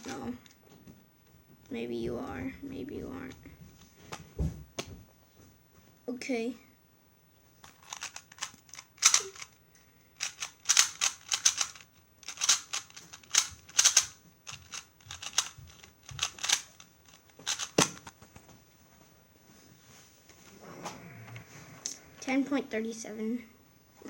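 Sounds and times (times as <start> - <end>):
puzzle cube plastic clicks: 0.0 - 0.6, 7.6 - 9.6, 10.2 - 18.2.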